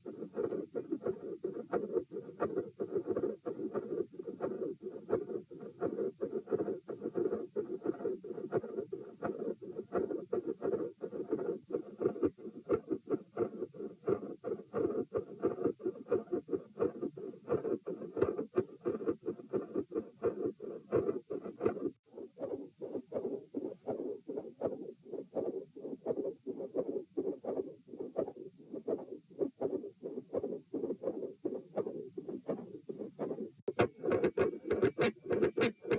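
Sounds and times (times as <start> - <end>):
irregular clicks and scratchy noise: 0.0 - 35.9
heartbeat sounds: 22.4 - 35.9.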